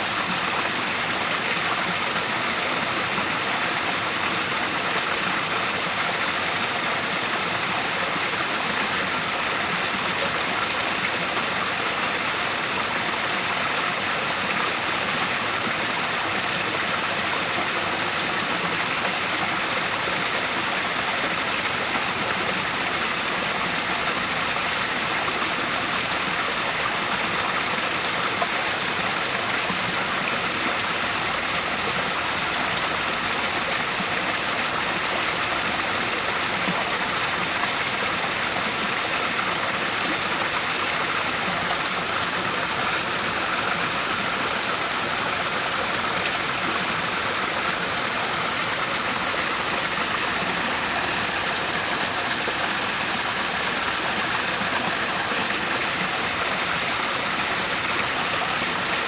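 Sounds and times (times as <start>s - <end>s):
waterfall rushing: 37.1s - 59.0s.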